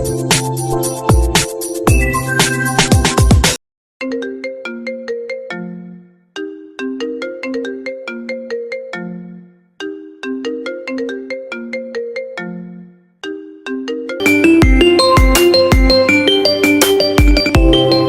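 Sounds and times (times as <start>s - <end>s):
phone ringtone melody: 4.0s - 18.0s
dense electronic ringtone: 13.8s - 18.0s.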